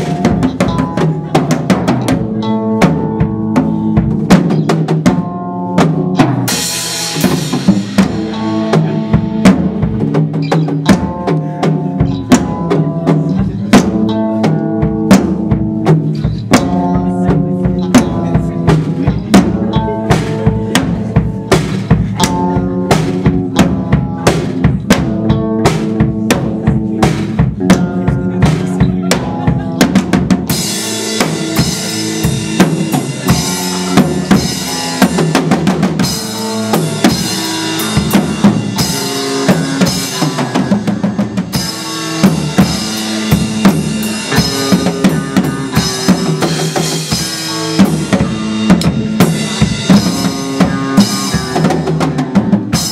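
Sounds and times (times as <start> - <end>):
drum kit beat: 0.0 - 52.9
instrumental band music: 0.0 - 52.9
cymbals: 30.0 - 52.9.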